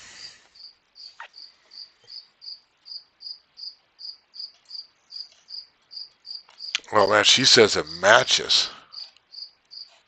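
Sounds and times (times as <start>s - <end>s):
cricket chirping: 0.2s - 6.8s, 8.8s - 9.9s.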